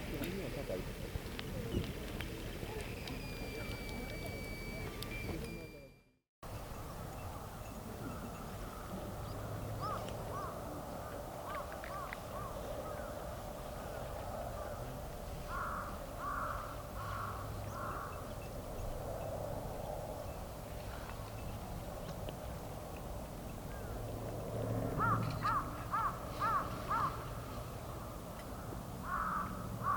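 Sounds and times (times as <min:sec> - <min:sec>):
crow cawing: 0:09.8 - 0:10.6, 0:11.4 - 0:13.2, 0:15.5 - 0:18.2, 0:25.0 - 0:27.3, 0:29.0 - 0:29.9.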